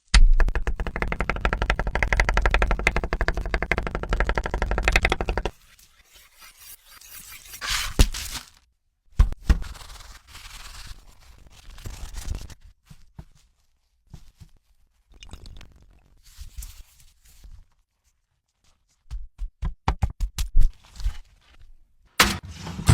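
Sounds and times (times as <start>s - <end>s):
scraping: 22.2s - 22.9s.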